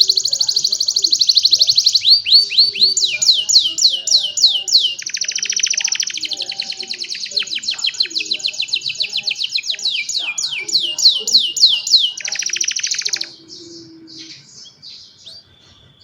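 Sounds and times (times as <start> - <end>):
canary singing: 0.0 - 16.0.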